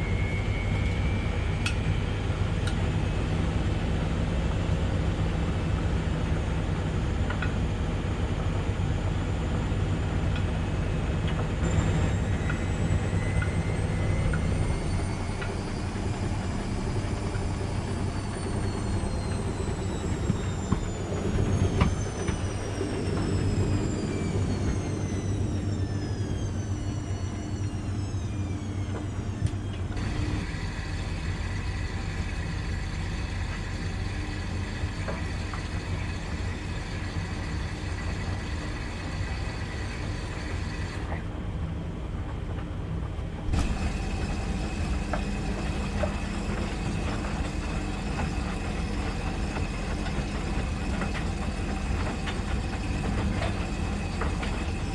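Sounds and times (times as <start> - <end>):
washing machine motor whine: 0.0 - 42.1, 42.9 - 54.9
low hum: 11.6 - 41.1.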